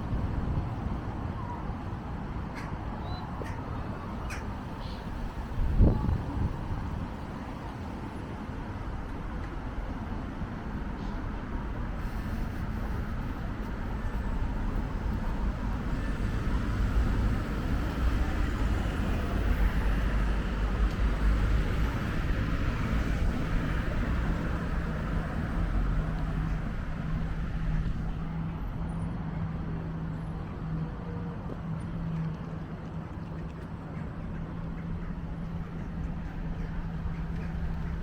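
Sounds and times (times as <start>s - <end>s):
wind buffeting microphone: 0.0s - 7.9s
street traffic: 0.0s - 38.0s
steady low hum: 10.6s - 28.9s.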